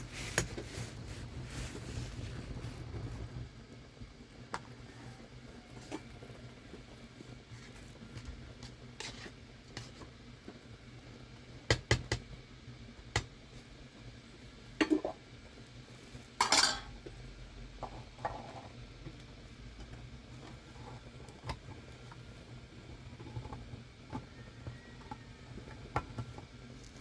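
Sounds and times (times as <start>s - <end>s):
pots and metal utensils clinking: 14.8s - 15.2s, 16.4s - 17.1s.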